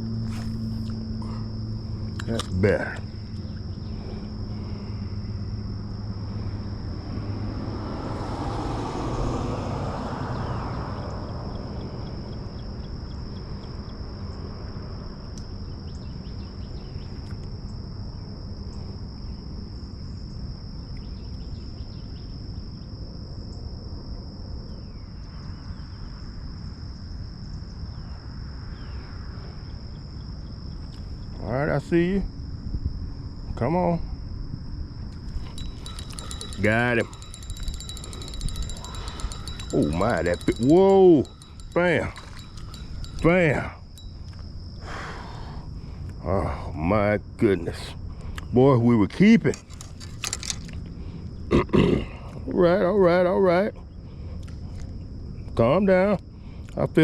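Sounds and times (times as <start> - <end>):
high-pitched insect chirring: 35.2 - 45.0.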